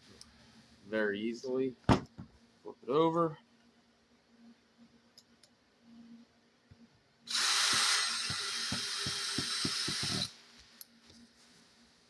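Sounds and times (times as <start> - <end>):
power screwdriver whirring: 7.3 - 10.3.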